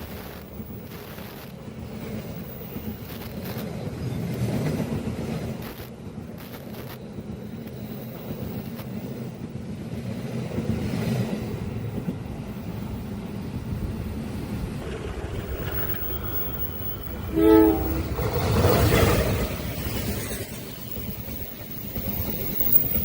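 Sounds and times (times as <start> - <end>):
train wheels rumbling on track: 0.0 - 23.0
train horn blast: 17.0 - 18.9.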